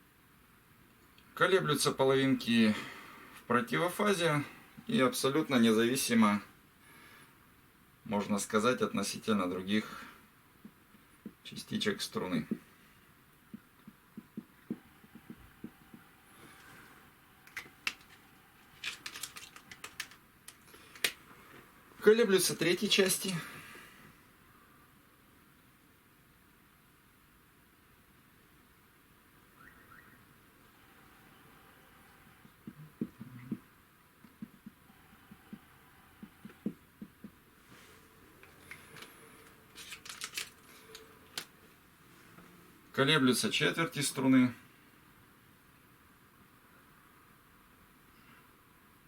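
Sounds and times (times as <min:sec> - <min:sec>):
pen tapping on a board: 0:13.5 - 0:16.0
sharp clicks: 0:18.8 - 0:21.2.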